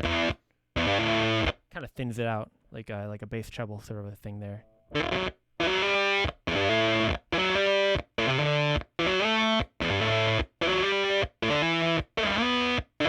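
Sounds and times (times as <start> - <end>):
fuzzed electric guitar chords: 0.0 - 1.6, 4.9 - 13.0.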